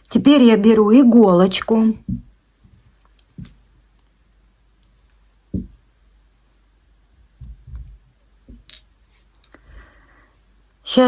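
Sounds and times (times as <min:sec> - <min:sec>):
dull bumps of handling: 0:02.0 - 0:03.6, 0:05.5 - 0:05.8.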